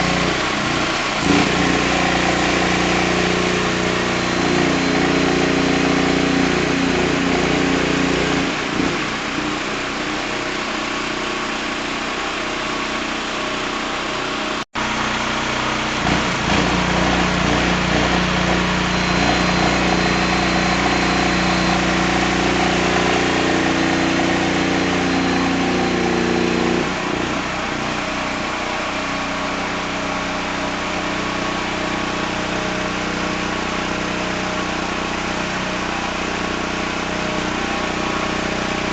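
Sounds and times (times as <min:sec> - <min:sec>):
welding generator engine hum: 0:00.0 - 0:38.9.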